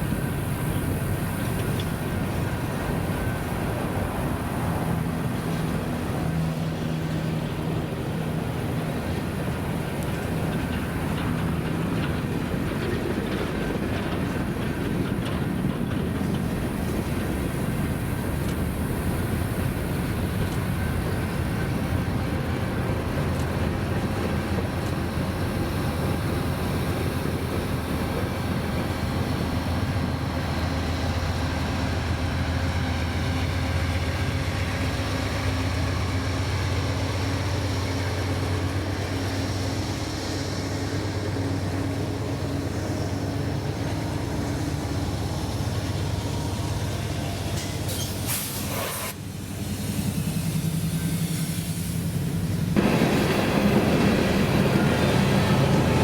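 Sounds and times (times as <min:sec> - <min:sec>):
freight train rumbling past: 0:00.0 - 0:56.0.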